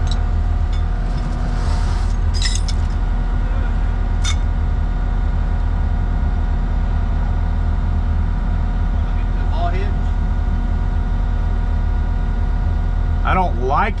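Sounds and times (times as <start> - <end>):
light metal clinks: 0.0 - 2.9
diesel engine running: 0.0 - 4.4.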